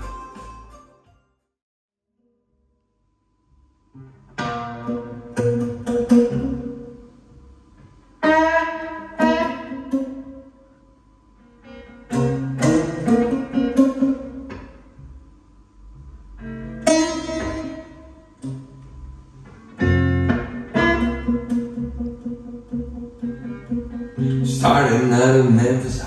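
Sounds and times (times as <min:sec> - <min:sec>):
bass: 0:00.0 - 0:01.3, 0:03.8 - 0:08.6, 0:12.1 - 0:26.0
plucked blues guitar: 0:04.0 - 0:10.6, 0:11.4 - 0:26.0.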